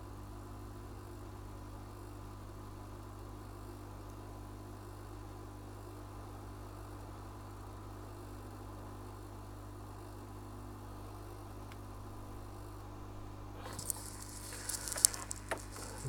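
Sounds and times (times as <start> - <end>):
low electrical hum: 0.0 - 16.0
light clicks and scrapes: 13.6 - 16.0.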